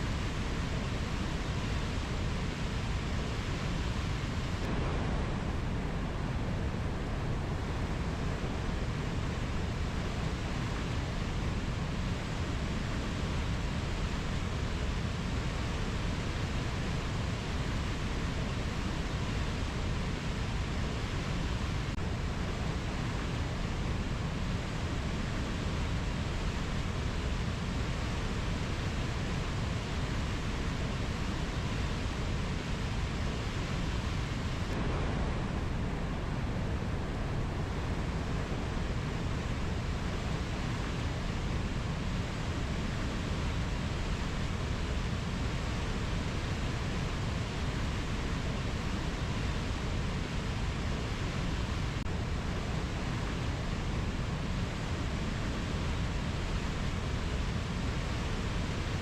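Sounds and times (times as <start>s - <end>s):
steady low rushing noise: 3.5s - 9.7s, 32.4s - 47.3s.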